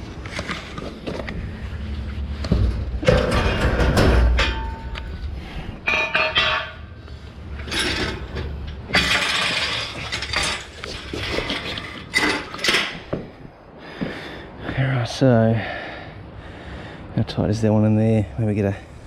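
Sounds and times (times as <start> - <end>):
hard objects clinking and clattering: 7.6 - 13.0.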